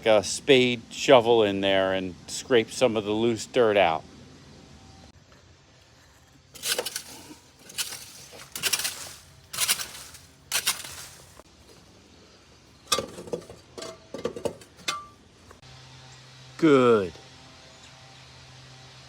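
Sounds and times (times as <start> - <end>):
rake scraping dirt: 5.3 - 11.9.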